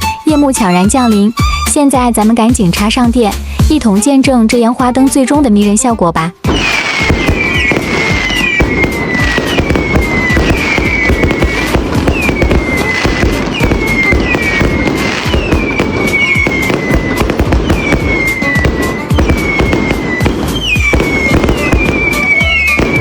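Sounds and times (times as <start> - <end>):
music: 0.0 - 23.0
firework falling whistle: 6.5 - 23.0
fireworks crackling and popping: 6.5 - 23.0.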